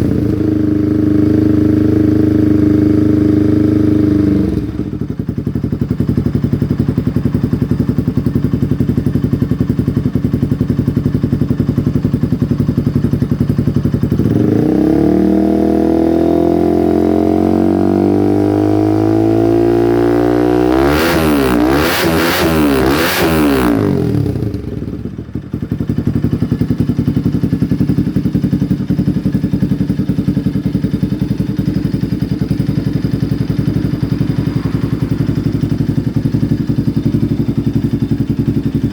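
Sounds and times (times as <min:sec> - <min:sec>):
motorcycle engine idling and revving: 0:00.0 - 0:38.9
engine rapid stutter: 0:30.8 - 0:38.9.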